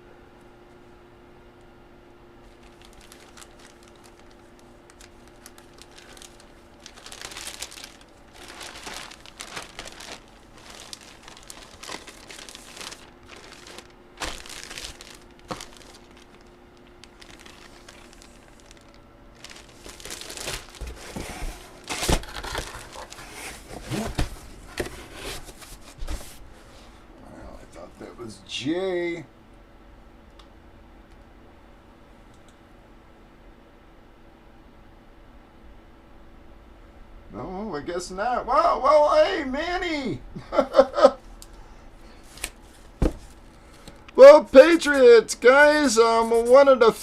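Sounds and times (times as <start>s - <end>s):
plastic wrapping crinkling: 2.5s - 26.2s, 42.2s - 45.0s.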